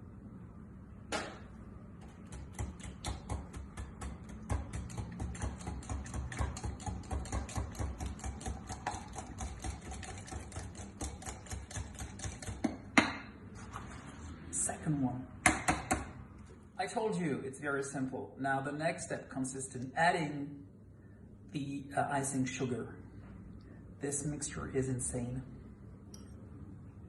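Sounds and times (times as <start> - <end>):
egg cracking on a bowl: 2.0 - 13.2
utensil beating batter in a bowl: 2.0 - 13.2.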